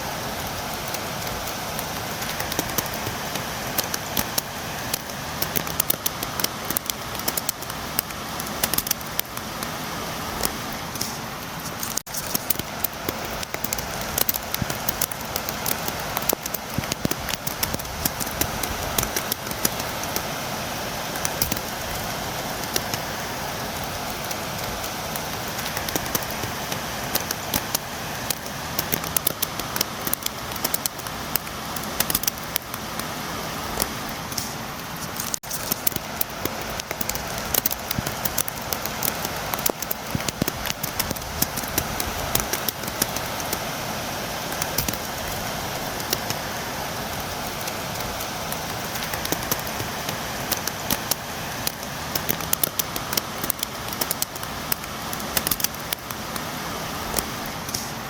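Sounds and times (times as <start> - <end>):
rain drumming on window: 0.0 - 58.0.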